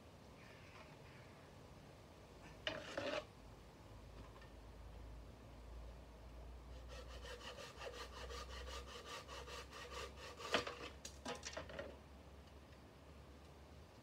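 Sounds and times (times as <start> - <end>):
hand saw cutting wood: 6.8 - 11.0.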